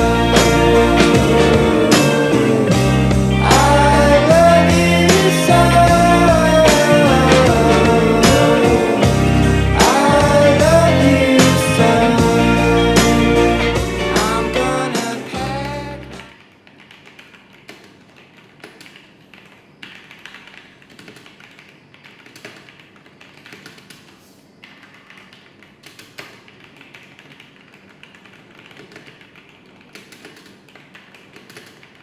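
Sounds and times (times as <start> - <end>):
mechanical keyboard typing: 16.6 - 32.0.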